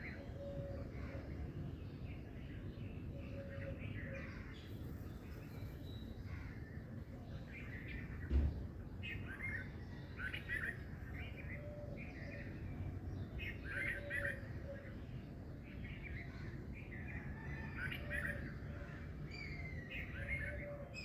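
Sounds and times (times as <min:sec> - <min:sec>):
birds chirping: 0:00.0 - 0:21.0
low background noise: 0:00.0 - 0:21.0
low thump: 0:08.2 - 0:08.7.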